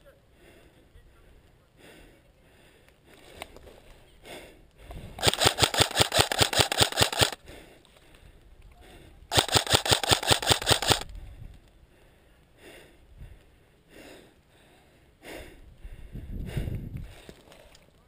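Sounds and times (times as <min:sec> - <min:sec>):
airsoft rifle full-auto bursts: 0:05.2 - 0:07.4, 0:09.3 - 0:11.1.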